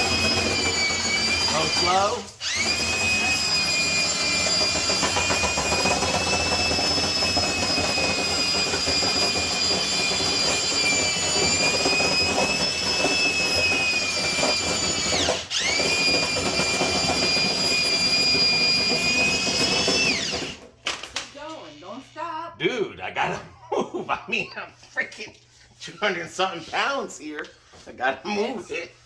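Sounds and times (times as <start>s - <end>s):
electric drill spinning: 0.0s - 22.2s.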